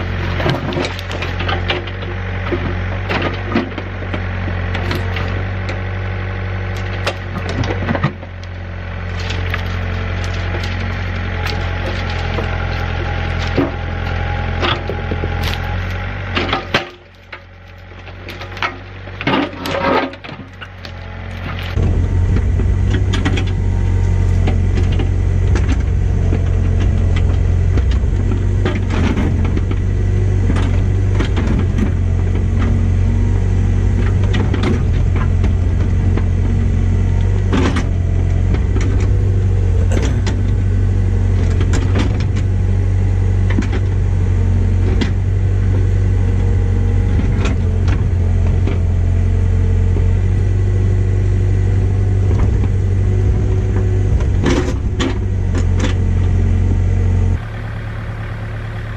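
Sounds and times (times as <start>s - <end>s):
diesel engine rumbling: 0.0s - 58.9s
sharp knocks and cracks: 6.7s - 32.8s, 37.2s - 39.2s.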